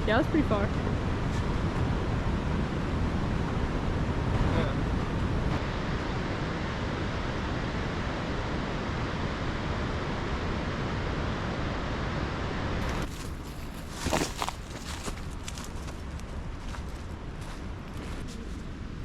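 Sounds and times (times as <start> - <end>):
crunching footsteps: 12.8 - 18.6.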